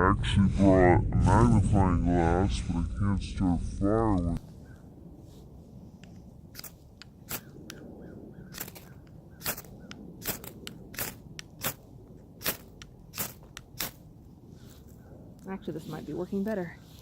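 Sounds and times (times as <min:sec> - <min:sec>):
fire striker rasping: 0:06.0 - 0:07.9, 0:08.5 - 0:14.2.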